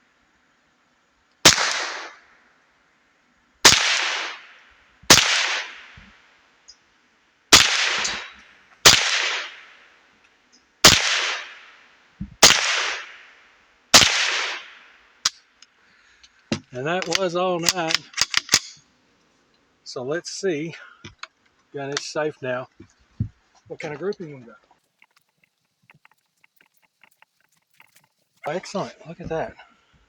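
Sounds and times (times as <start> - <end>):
rifle shots with echo: 1.4 - 2.2, 3.6 - 6.0, 7.5 - 9.8, 10.8 - 11.8, 12.4 - 13.4, 14.0 - 14.9.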